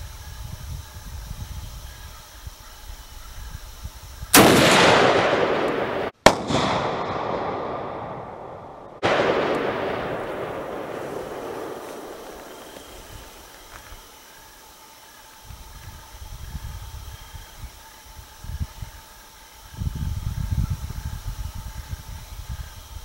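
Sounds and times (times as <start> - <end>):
rifle shots with rolling echo: 4.3 - 13.6.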